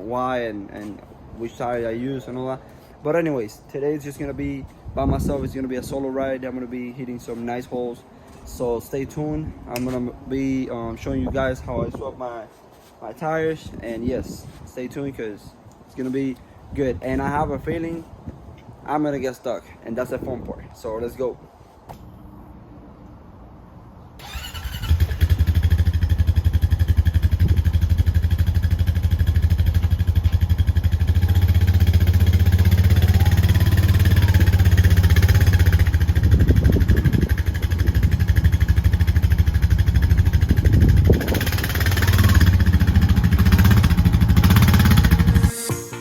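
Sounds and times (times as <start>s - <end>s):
atv engine starting: 24.2s - 45.5s
atv engine idling: 24.3s - 45.5s.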